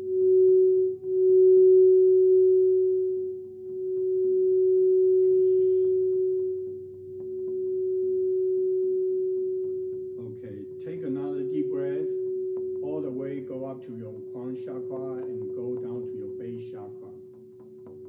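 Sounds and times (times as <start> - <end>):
crystal singing bowl tone: 0.0 - 10.2, 10.8 - 14.4.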